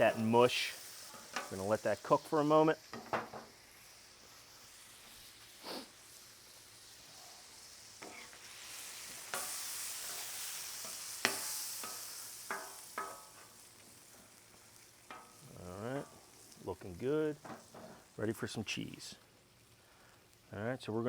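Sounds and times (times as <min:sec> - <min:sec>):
meat sizzling on a griddle: 0:00.0 - 0:20.6
spatula scraping metal: 0:08.0 - 0:08.4.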